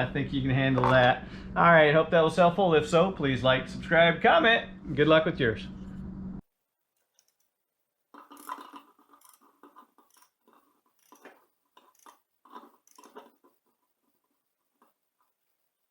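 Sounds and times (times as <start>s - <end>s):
faint rustling and crackling: 6.4s - 15.9s.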